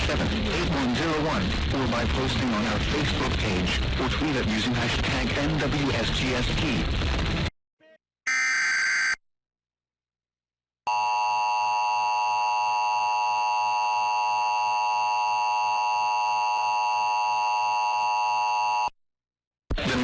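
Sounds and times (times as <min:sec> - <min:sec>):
two-tone alert signal: 0:08.3 - 0:09.2.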